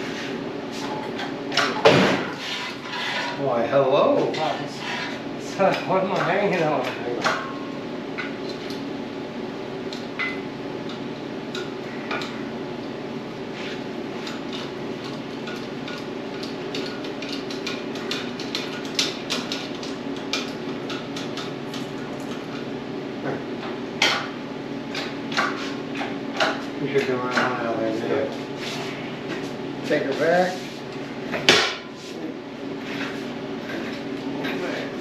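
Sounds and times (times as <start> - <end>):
machine hum: 0.0 - 35.0.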